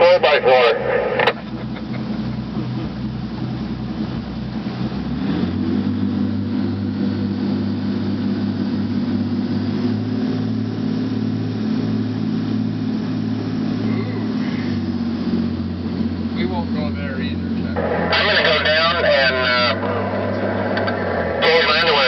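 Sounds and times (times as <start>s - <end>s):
boat diesel engines running: 0.0s - 22.0s.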